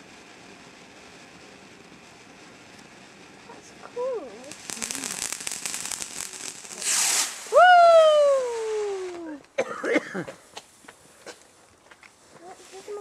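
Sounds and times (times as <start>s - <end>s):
fireworks crackling: 0.0s - 13.0s
descending firework whistle: 3.4s - 9.4s
short loud hiss: 4.6s - 9.3s.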